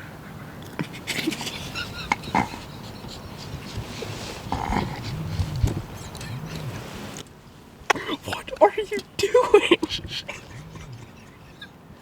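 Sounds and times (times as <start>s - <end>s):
handling clicks and rustles: 0.6s - 11.6s
man's stifled laughter: 0.8s - 6.0s, 7.9s - 12.0s.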